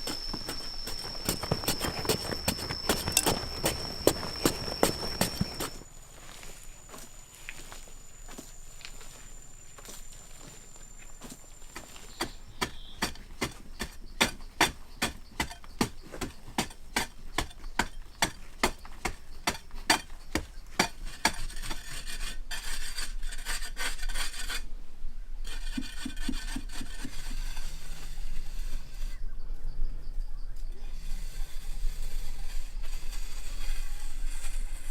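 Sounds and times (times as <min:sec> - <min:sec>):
hand tool rasping: 0:00.0 - 0:05.8, 0:11.8 - 0:24.6, 0:25.4 - 0:27.9.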